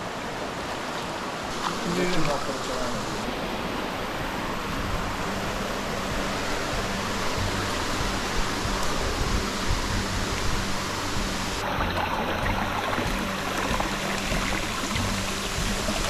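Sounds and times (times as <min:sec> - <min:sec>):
river flowing over rocks: 0:00.0 - 0:16.0.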